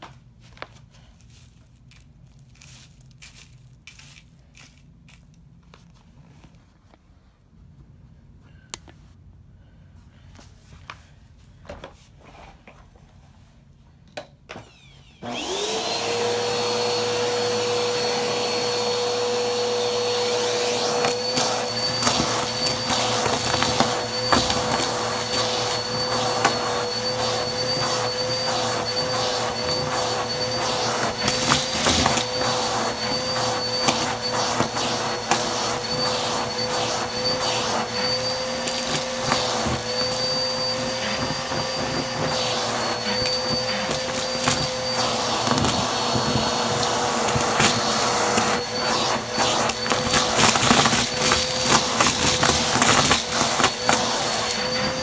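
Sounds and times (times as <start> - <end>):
vacuum cleaner whining: 14.5 - 55.0.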